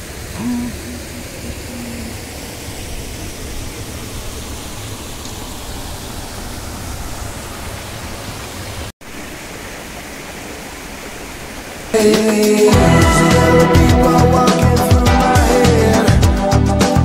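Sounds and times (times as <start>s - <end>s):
rushing water or wind noise: 0.0s - 14.0s
loud music: 12.0s - 17.0s.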